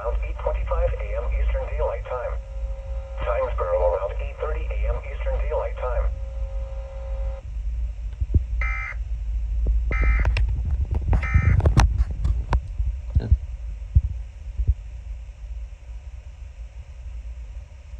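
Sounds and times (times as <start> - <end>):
buzzy digital data tones: 0.0 - 7.4, 11.2 - 11.6
low hum: 0.0 - 17.9.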